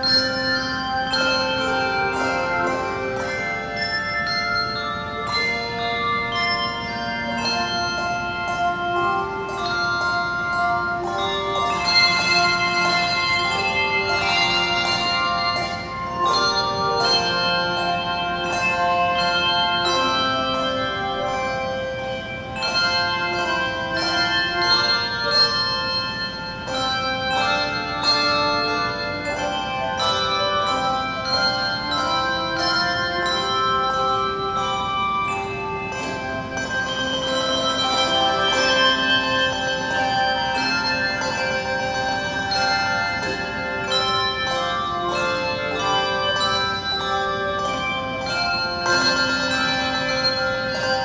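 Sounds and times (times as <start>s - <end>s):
handbell choir playing: 0.0s - 51.0s.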